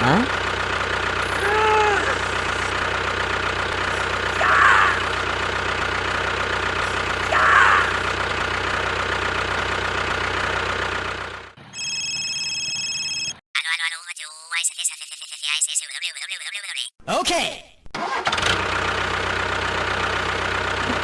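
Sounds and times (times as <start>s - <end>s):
engine running: 0.0s - 13.3s, 18.0s - 21.0s.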